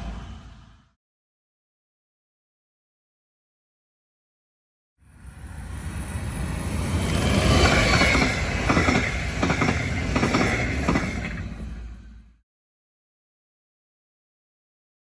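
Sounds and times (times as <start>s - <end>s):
train passing by: 0.0s - 0.9s, 5.1s - 12.4s.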